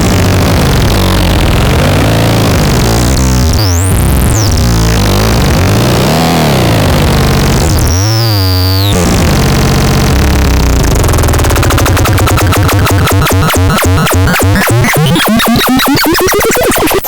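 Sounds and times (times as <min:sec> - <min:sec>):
synthesized tones sweeping in pitch: 0:10.1 - 0:17.0
high tone gliding down: 0:10.4 - 0:17.0.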